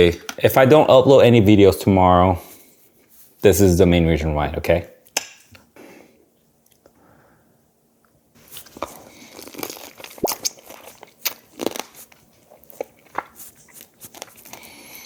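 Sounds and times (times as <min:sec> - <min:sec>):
crab shell crunching: 0:08.5 - 0:15.0.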